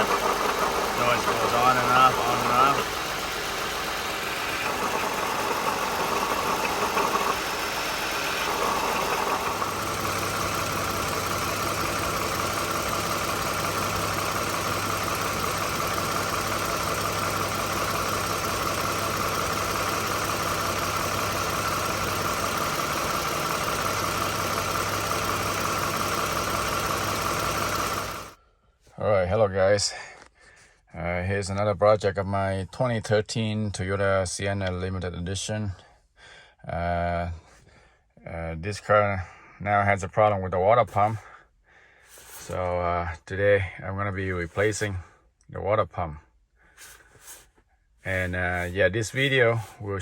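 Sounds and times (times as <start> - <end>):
car engine idling with high whine: 0.0 - 28.3.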